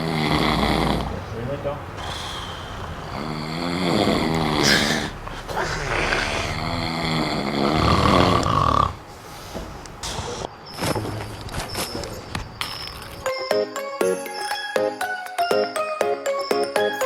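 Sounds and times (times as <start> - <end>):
person snoring: 0.0 - 1.2, 2.0 - 9.0.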